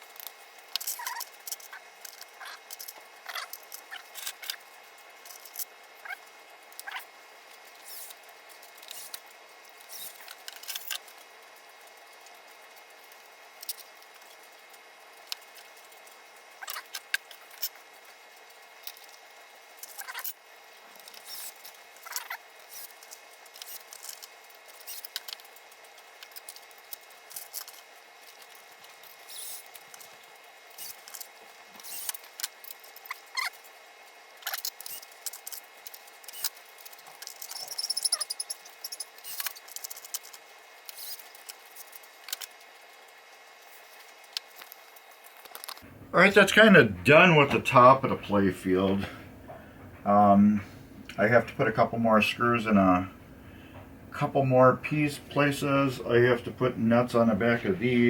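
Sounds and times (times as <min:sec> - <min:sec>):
parts and tools clicking: 0:00.0 - 0:11.3, 0:18.8 - 0:33.7, 0:34.4 - 0:42.7, 0:43.8 - 0:45.8
short high squeaks: 0:00.9 - 0:01.8, 0:37.3 - 0:39.6.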